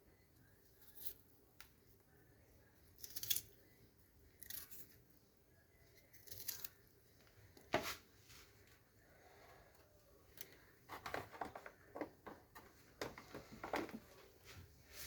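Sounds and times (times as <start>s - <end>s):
garlic skin crackling and tearing: 3.0s - 3.5s, 4.4s - 5.0s, 6.0s - 6.8s.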